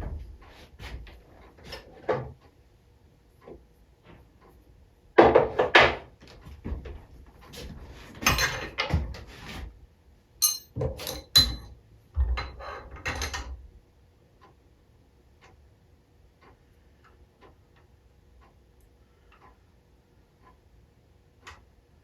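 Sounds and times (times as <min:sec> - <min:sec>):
metal engine parts clinking: 0:10.4 - 0:11.7
faint ticking: 0:14.2 - 0:22.0.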